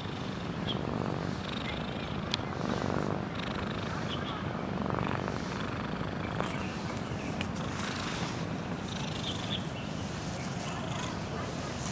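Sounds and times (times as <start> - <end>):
cat snoring: 0.0 - 4.0, 4.7 - 6.2.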